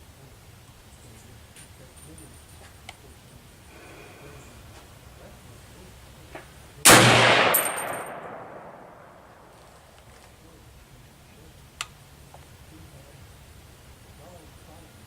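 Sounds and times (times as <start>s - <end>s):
rifle shot echoing: 6.8s - 9.5s.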